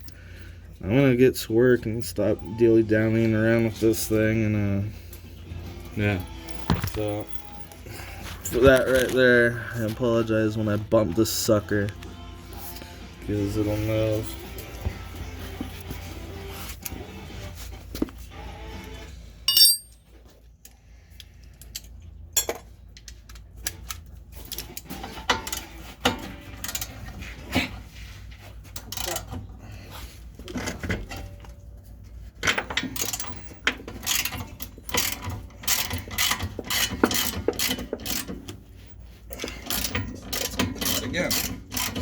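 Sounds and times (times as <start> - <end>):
faint music: 0.8 - 19.5
metal tools clinking: 19.5 - 20.0
ringing metallic clang: 19.5 - 20.0.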